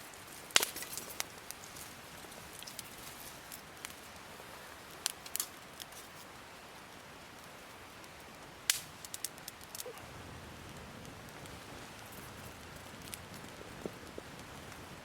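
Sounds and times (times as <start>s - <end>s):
campfire crackling: 0.0s - 15.0s
faint steady hiss: 0.0s - 15.0s.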